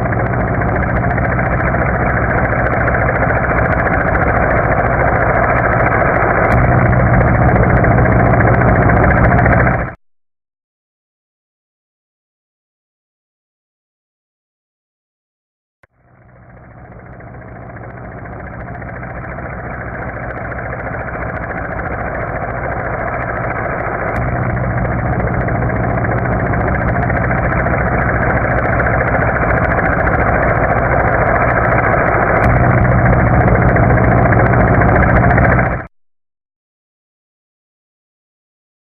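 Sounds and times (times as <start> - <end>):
helicopter rotor and engine: 0.0 - 10.0, 16.0 - 35.9.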